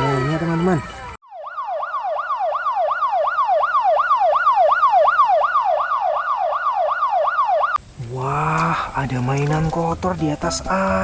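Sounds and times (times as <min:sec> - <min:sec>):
toy siren wailing: 0:00.0 - 0:07.8.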